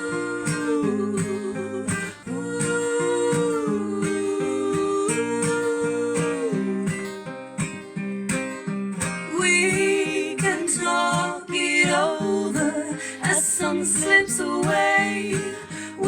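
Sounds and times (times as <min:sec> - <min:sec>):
acoustic guitar strumming: 0:00.0 - 0:16.0.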